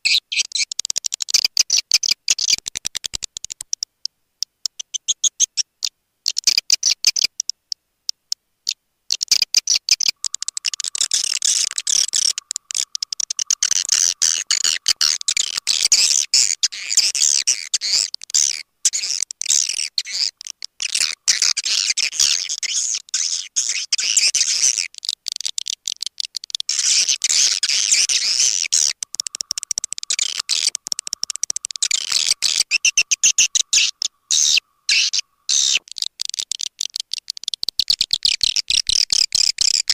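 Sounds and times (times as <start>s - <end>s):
rapid bird twittering chatter: 0.0s - 39.9s.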